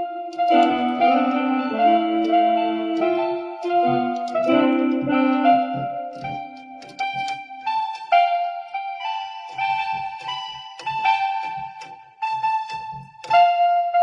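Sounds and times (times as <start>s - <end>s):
electric piano melody: 0.0s - 14.0s.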